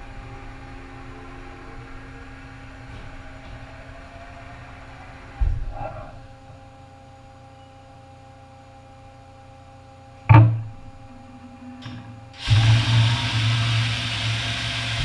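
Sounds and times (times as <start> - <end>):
machine hum: 0.0 - 15.0
loud metallic clunk: 10.3 - 10.8.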